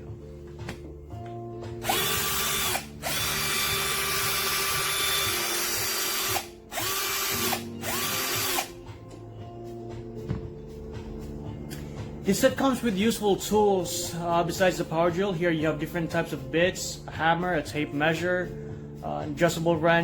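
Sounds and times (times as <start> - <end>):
cordless drill motor whining: 1.8 - 8.7.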